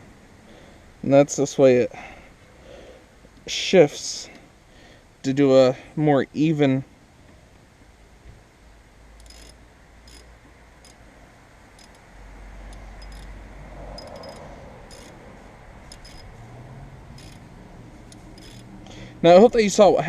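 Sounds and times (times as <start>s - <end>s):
brake caliper metallic clicks: 9.2s - 11.0s, 15.8s - 16.3s, 17.2s - 17.4s, 18.1s - 18.7s.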